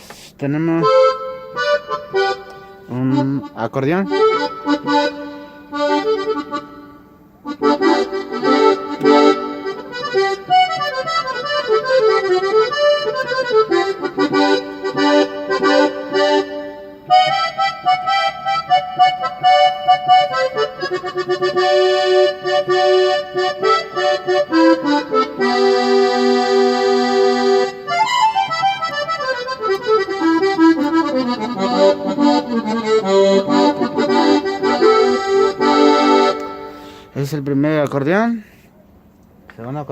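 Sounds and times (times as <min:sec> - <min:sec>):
keyboard accordion runs: 0:00.0 - 0:37.2.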